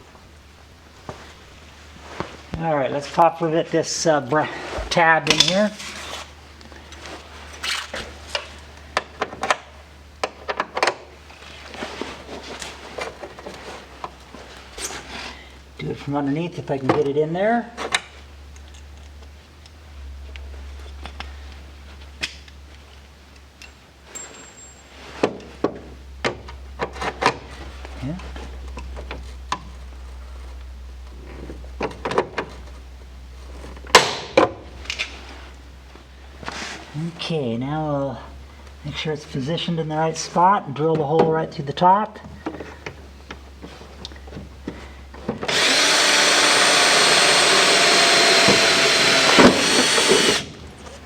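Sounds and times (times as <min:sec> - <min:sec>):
steady low hum: 0:00.0 - 0:51.0
low hum: 0:18.2 - 0:41.0.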